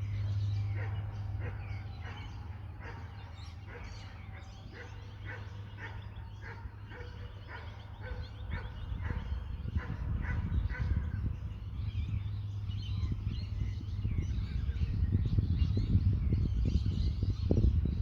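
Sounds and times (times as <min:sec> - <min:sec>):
distant animal barking calls: 0:00.0 - 0:11.3
wind rumbling on microphone: 0:00.0 - 0:18.0.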